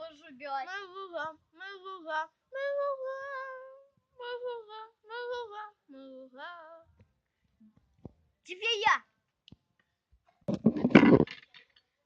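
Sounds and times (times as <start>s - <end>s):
child singing unaccompanied: 0.0s - 7.0s.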